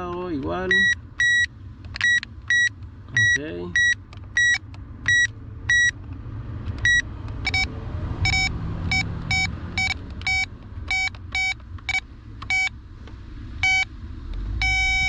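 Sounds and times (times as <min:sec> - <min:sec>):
steady low rumble: 0:00.0 - 0:15.0
circuit tester beeping: 0:00.7 - 0:06.0, 0:06.8 - 0:12.7, 0:13.6 - 0:13.9, 0:14.6 - 0:15.0.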